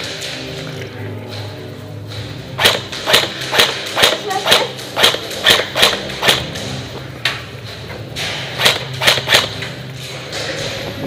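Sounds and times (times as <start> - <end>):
steady low hum: 0.0 - 11.0
airsoft gun shots: 2.6 - 6.6, 8.2 - 9.7.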